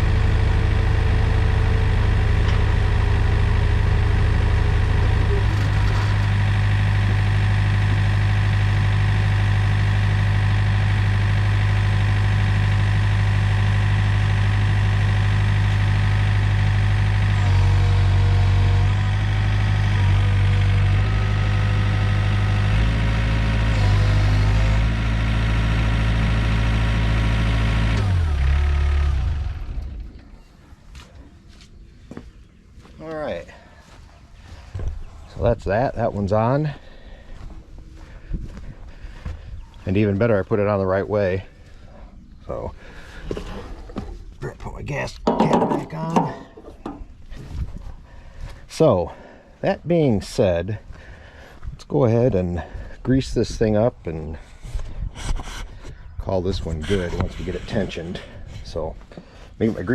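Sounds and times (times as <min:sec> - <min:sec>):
excavator diesel engine running: 0:00.0 - 0:30.5, 0:44.7 - 0:49.5, 0:56.4 - 0:59.9.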